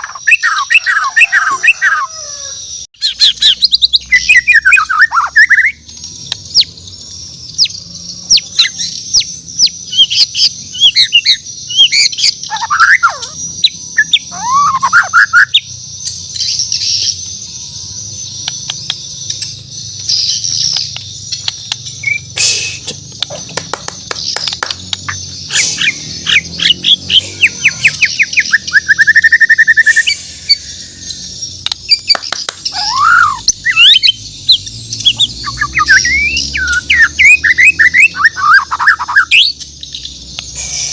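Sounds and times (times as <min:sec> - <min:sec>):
songbird whistling and trilling: 0:00.0 - 0:40.9.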